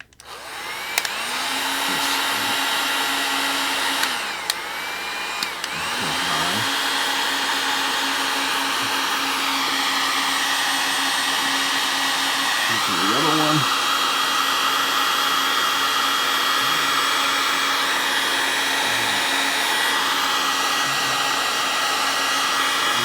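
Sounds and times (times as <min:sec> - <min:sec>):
heat gun blowing air: 0:00.0 - 0:23.0.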